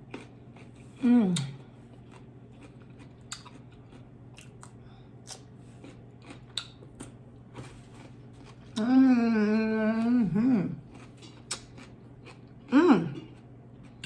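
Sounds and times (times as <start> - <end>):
chewing with crunches: 0.0 - 8.9, 9.9 - 14.0
person humming mmm: 1.0 - 1.7, 8.7 - 10.9, 12.7 - 13.4.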